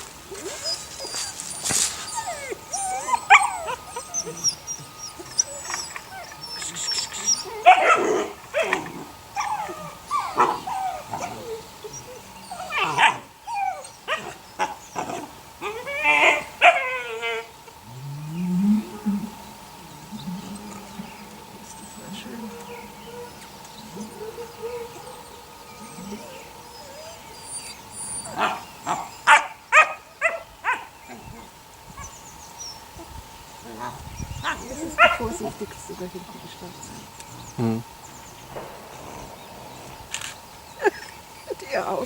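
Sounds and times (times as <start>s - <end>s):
puppies whining and yelping: 0.0s - 17.5s, 22.1s - 33.1s.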